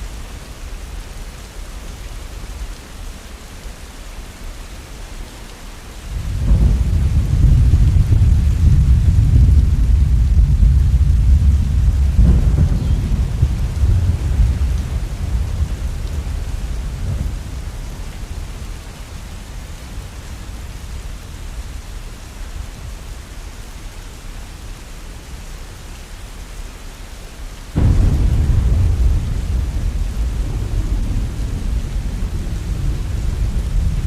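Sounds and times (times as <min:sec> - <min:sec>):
rain hissing: 0:00.0 - 0:34.0
loud thunder crack: 0:06.1 - 0:18.6, 0:27.8 - 0:34.0
thunder rumbling: 0:06.1 - 0:21.6, 0:27.8 - 0:34.0.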